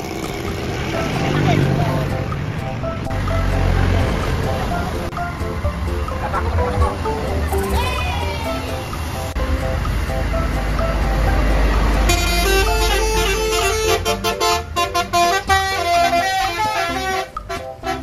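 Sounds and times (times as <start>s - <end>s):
low engine rumble: 0.0s - 18.0s
multi-tone horn playing a tune: 12.0s - 18.0s.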